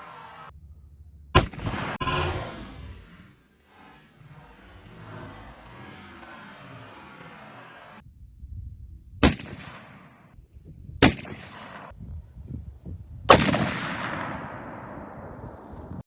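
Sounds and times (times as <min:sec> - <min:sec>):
rolling echo: 0:11.0 - 0:16.0
heavy rifle shots: 0:13.3 - 0:16.0.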